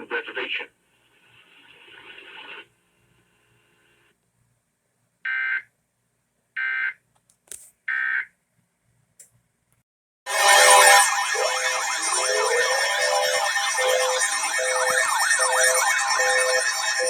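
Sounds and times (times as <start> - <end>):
digital data tone bursts: 10.3 - 17.0
wavering siren: 10.3 - 17.0.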